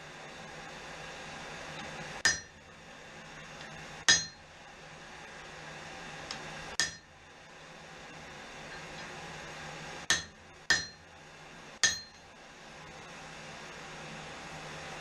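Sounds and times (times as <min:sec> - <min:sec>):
hammer striking hot steel: 0:02.2 - 0:02.6, 0:04.0 - 0:04.5, 0:06.7 - 0:07.2, 0:10.0 - 0:11.2, 0:11.8 - 0:12.3.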